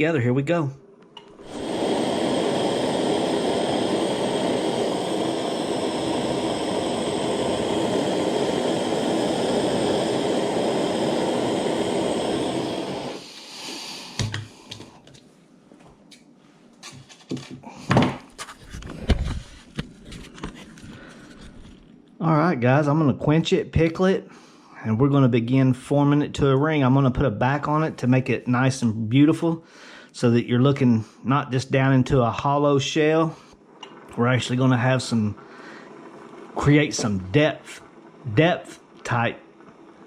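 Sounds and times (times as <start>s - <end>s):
soldering torch hissing: 1.2s - 15.0s, 31.6s - 40.0s.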